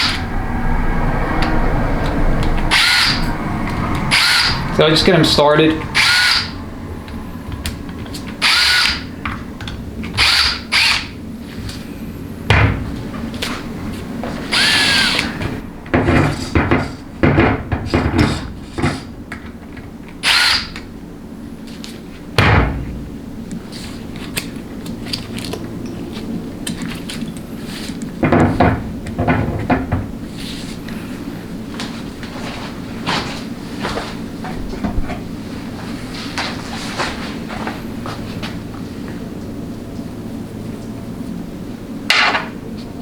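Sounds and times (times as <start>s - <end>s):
power driver spinning bolts: 4.0s - 6.6s.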